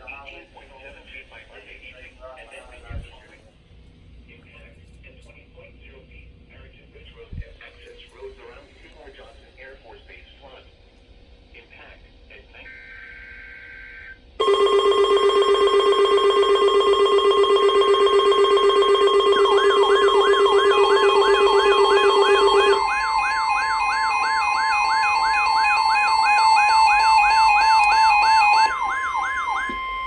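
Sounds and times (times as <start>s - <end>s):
steady alert tone: 14.4s - 30.0s
rising siren-like warble: 18.4s - 30.0s.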